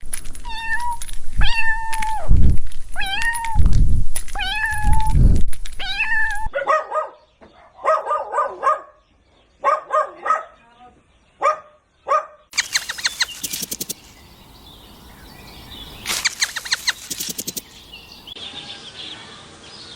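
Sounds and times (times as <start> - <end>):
cat meowing: 0.4 - 2.3, 3.0 - 3.7, 4.4 - 5.2, 5.8 - 6.5
dog barking: 6.5 - 9.0, 9.6 - 10.6, 11.4 - 12.5.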